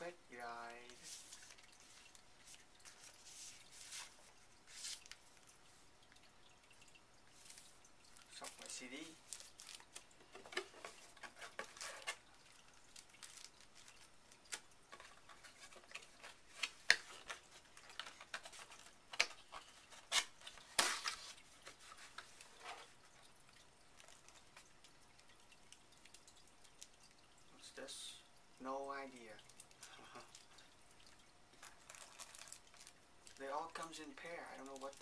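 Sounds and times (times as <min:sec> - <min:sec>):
packaging rustling: 0:07.4 - 0:23.2, 0:31.6 - 0:33.9.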